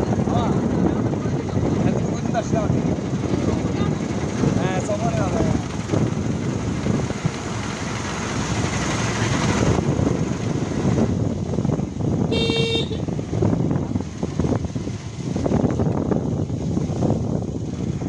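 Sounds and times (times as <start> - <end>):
rumbling road and wind noise: 0.0 - 18.0
vehicle horn toot: 12.3 - 13.2.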